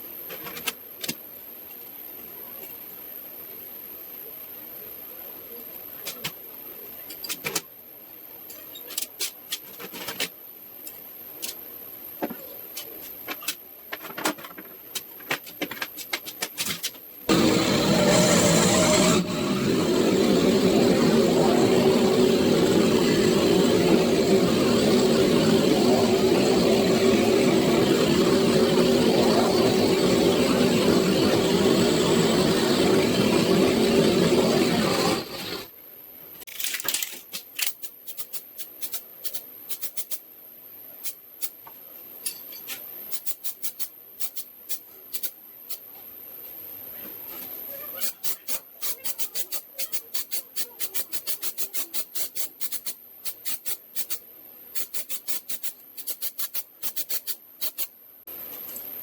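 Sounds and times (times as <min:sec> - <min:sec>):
power tool running: 0:17.3 - 0:35.7
small metal parts clicking: 0:36.5 - 0:40.2, 0:54.8 - 0:57.9.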